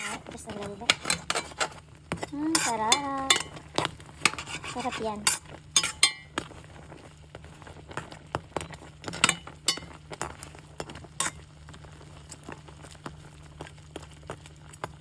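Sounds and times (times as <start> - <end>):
utensil clinking against pot: 0.0 - 6.4, 8.6 - 10.0
low steady hum: 0.0 - 15.0.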